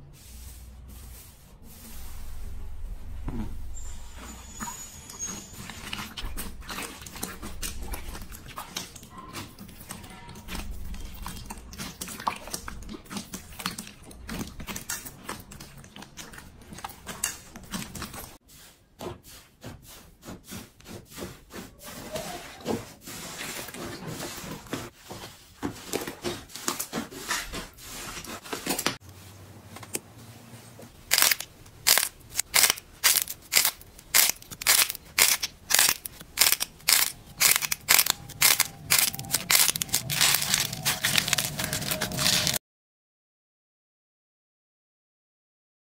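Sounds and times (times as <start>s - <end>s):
loud sharp crunches: 31.1s - 42.6s
slime crackling and popping: 31.1s - 42.6s.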